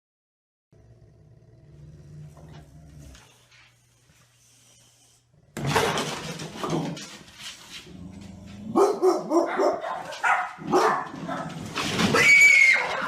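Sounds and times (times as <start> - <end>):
dog barking: 8.7 - 11.6, 12.7 - 13.0.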